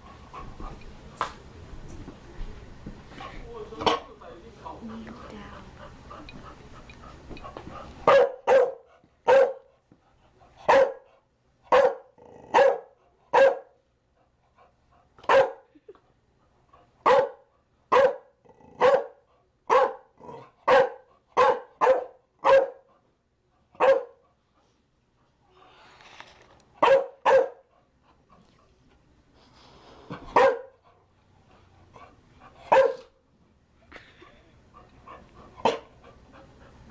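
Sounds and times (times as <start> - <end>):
dog barking: 8.0 - 9.7, 10.7 - 11.1, 11.7 - 13.8, 15.3 - 15.6, 17.0 - 22.9, 23.8 - 24.2, 26.8 - 27.7, 30.3 - 30.8, 32.7 - 33.1, 35.6 - 35.9.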